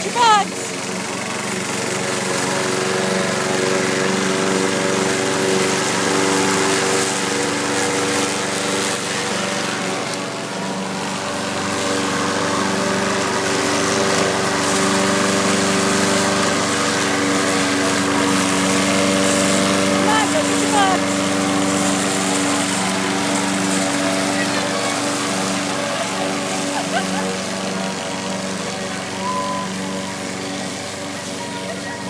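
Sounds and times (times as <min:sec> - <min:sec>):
lawn mower engine running: 0:00.0 - 0:32.0.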